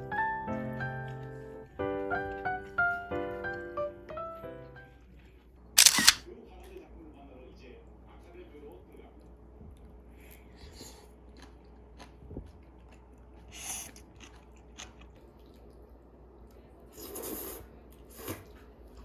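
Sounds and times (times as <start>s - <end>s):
person chewing: 9.2s - 17.6s.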